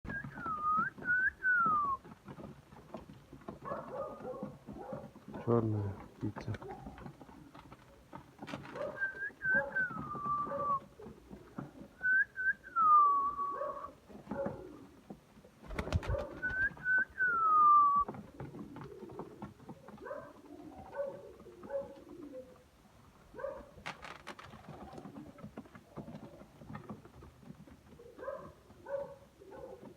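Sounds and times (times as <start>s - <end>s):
downward sliding whistled notes: 0.0s - 2.0s, 9.0s - 10.8s, 12.0s - 13.5s, 16.3s - 18.1s
pigeons cooing: 0.1s - 29.9s.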